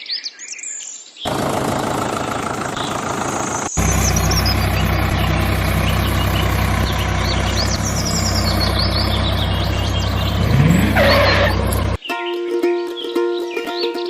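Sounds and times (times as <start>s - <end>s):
birds chirping: 1.3s - 12.0s
tractor engine idling: 1.3s - 12.0s.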